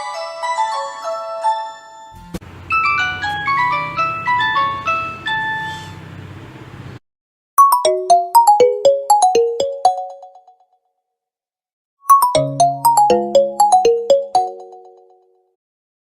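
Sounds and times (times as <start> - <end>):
chime-like ringtone notes: 2.7 - 5.8, 7.6 - 10.6, 12.0 - 15.2
mobile phone ringtone melody: 2.7 - 5.9, 7.6 - 10.6, 12.0 - 15.4.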